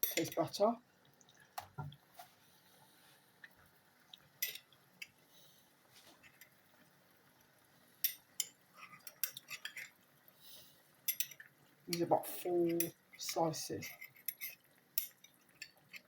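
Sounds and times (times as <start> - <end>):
utensils clinking against dishes: 12.7 - 16.0.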